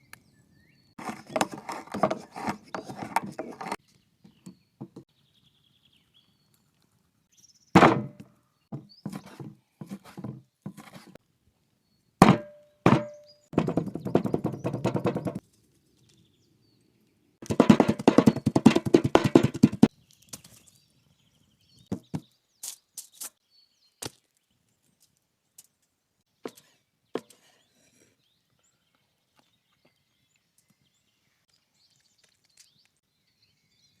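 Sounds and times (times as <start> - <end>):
cleaver chopping on wooden board: 7.8 - 8.2, 12.2 - 15.4, 17.4 - 19.9.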